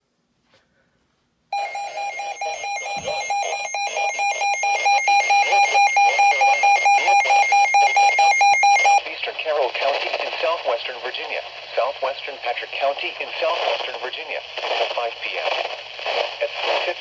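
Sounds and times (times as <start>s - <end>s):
warbling electronic alarm tone: 1.6s - 9.0s
faint broadcast audio: 8.6s - 17.0s.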